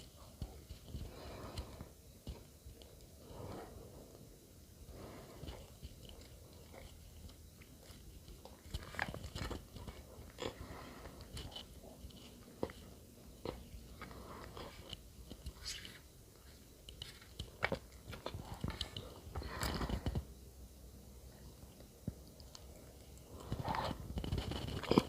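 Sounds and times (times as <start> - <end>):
chewing bread crunches: 21.8 - 25.0.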